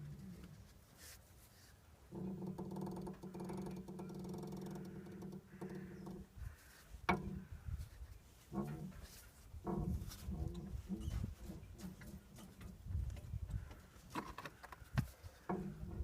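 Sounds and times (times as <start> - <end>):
suspension link creaking: 2.1 - 6.4, 8.4 - 16.0.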